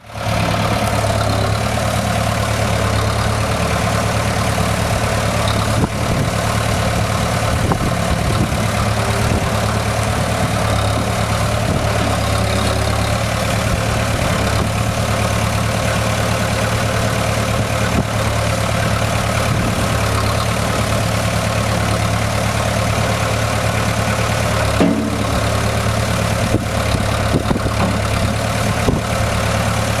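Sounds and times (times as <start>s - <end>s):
engine idling: 0.0s - 30.0s
brief clunks: 24.7s - 25.9s.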